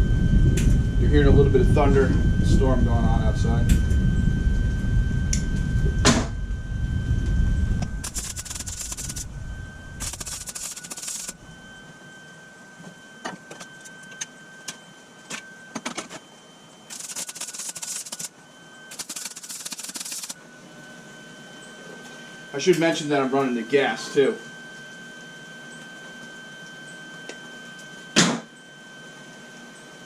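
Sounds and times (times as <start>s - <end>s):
thunder rumbling: 0.0s - 10.4s
welder crackling: 7.7s - 11.5s, 16.9s - 18.3s, 18.9s - 20.4s.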